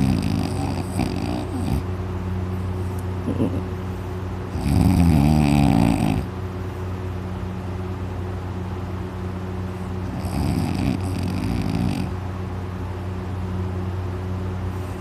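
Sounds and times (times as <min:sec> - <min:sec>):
man snoring loudly: 0:00.0 - 0:01.8, 0:04.6 - 0:06.3, 0:10.1 - 0:12.1
steady low hum: 0:00.0 - 0:15.0.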